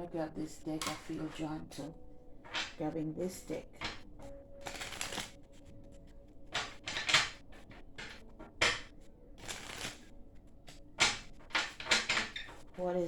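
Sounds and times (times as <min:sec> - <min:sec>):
cards being shuffled: 0:04.6 - 0:05.6, 0:06.5 - 0:10.1, 0:10.7 - 0:12.7.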